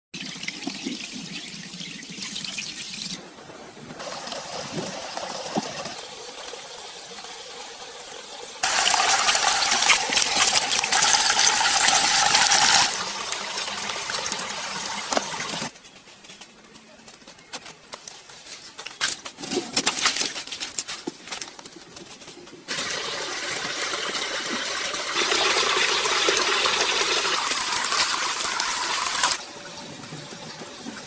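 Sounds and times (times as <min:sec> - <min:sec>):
water pouring and splashing: 0:00.2 - 0:15.8, 0:22.7 - 0:31.0.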